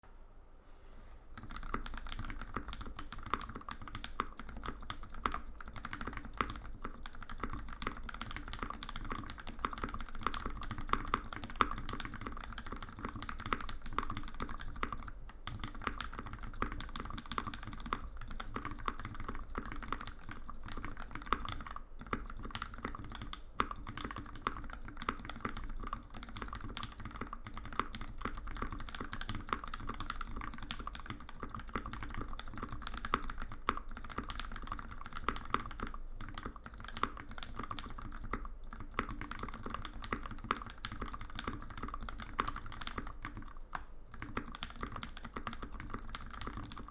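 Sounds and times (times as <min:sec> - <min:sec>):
fast mechanical keyboard typing: 0:01.4 - 0:46.9.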